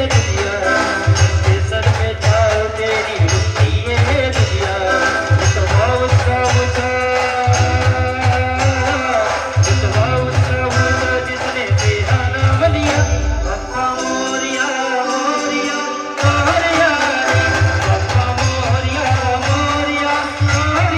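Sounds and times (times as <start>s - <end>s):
loud steady low drum beat: 0.0s - 14.0s, 16.2s - 20.9s.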